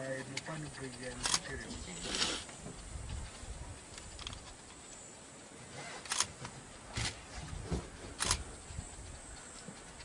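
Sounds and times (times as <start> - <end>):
camera shutter clicking: 6.1 - 6.3, 8.2 - 8.4.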